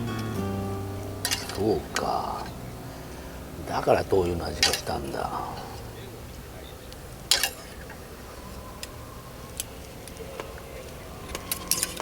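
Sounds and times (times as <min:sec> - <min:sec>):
metal cookware clattering: 0:01.2 - 0:01.6.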